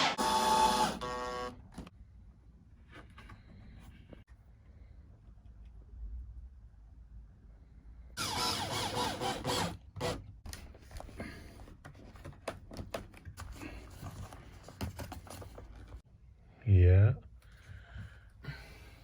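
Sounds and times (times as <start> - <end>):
power drill whining into wood: 0.0 - 1.6, 8.2 - 10.2.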